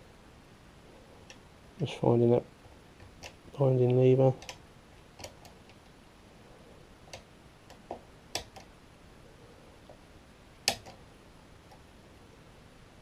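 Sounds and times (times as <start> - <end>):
lock pick metallic clicks: 7.1 - 8.7, 10.6 - 11.0.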